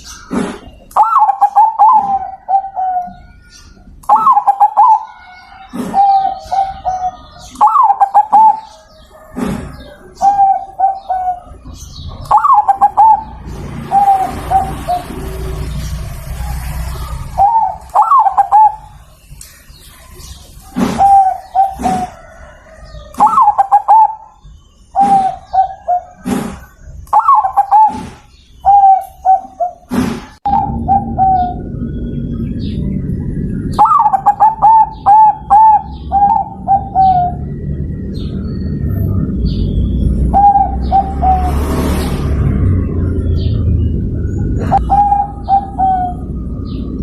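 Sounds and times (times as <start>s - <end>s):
dove cooing: 0.1s - 3.4s, 4.0s - 15.4s, 16.3s - 19.0s, 20.6s - 32.9s, 33.7s - 37.7s, 40.3s - 41.6s, 44.4s - 46.9s.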